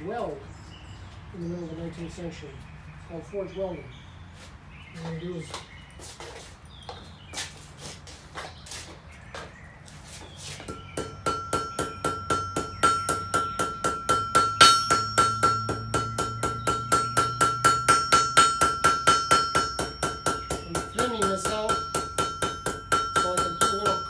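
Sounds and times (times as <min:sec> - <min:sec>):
hammer striking steel on anvil: 0:10.7 - 0:24.0.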